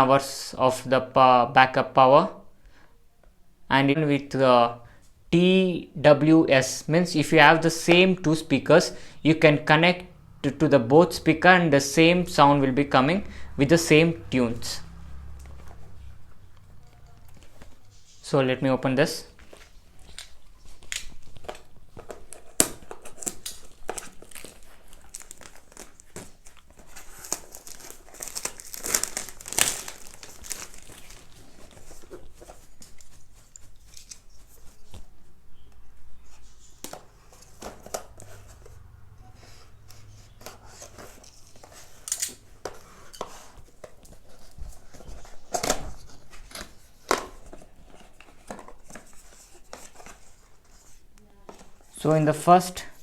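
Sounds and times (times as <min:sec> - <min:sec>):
paper and plastic tearing: 0:19.4 - 0:35.0.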